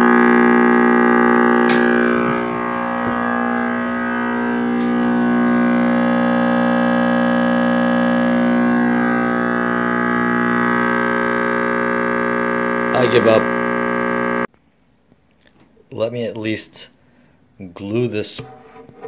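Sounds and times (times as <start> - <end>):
radio speaker loud hum: 0.0 - 14.5.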